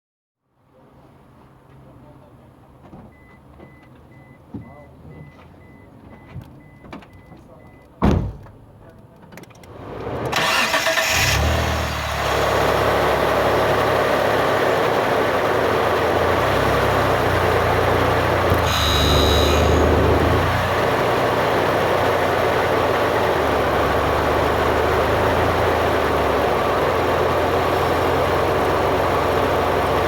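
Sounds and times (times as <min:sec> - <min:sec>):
loud thump: 0:08.0 - 0:08.6
car engine starting and idling: 0:09.4 - 0:30.0.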